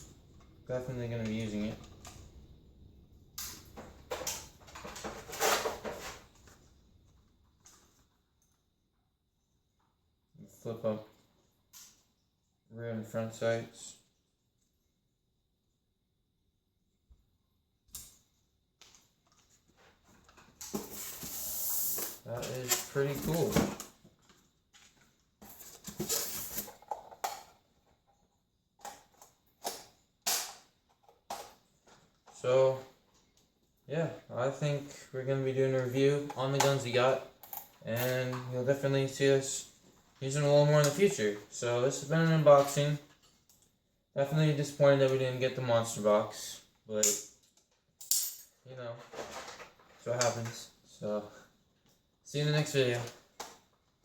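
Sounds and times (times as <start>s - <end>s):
rustling sliding scrapes: 4.8s - 6.4s, 20.7s - 23.6s.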